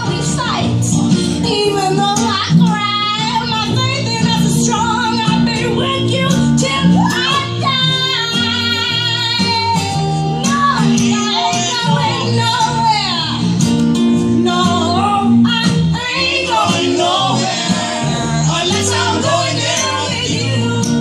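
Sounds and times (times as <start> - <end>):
woman singing blues: 0.0 - 13.6, 14.2 - 21.0
acoustic guitar: 0.0 - 21.0
double bass: 0.0 - 21.0.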